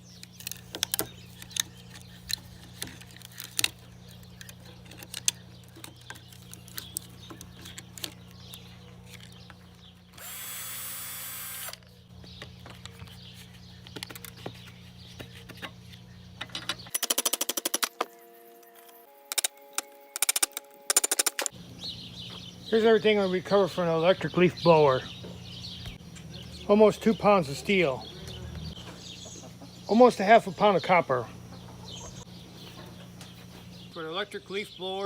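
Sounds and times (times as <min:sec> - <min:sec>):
tools clicking on plastic parts: 0:00.1 - 0:09.5, 0:19.3 - 0:21.5
power tool whirring: 0:10.1 - 0:11.8.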